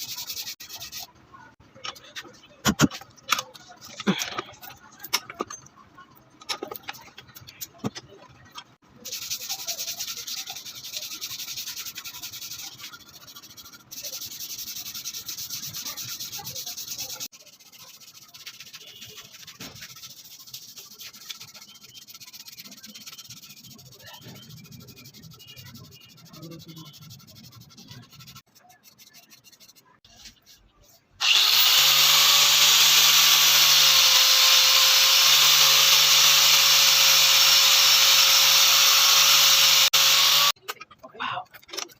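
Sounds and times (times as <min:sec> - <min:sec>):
fast steady scraping: 0:00.0 - 0:05.7, 0:06.6 - 0:41.9
soft rubbing: 0:09.0 - 0:31.2.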